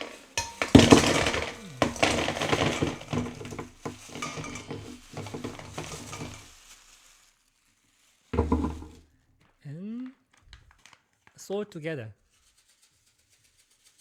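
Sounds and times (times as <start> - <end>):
ice cubes clattering into metal bowl: 0.0 - 6.7, 8.4 - 9.0.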